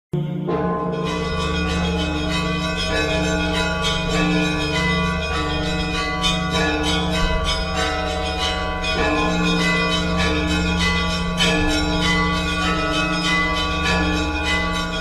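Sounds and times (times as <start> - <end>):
deep bells ringing: 0.2 - 15.0.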